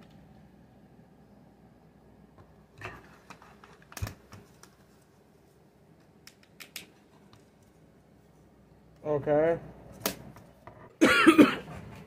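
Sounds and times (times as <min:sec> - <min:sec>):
plastic parts clicking and tapping: 0:06.0 - 0:07.8.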